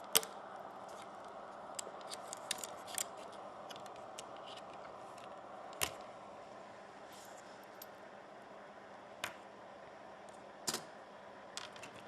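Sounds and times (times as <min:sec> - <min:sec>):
small parts clicking and tapping: 0:00.0 - 0:06.1, 0:10.6 - 0:10.9, 0:11.5 - 0:12.0
background hiss: 0:00.0 - 0:12.0.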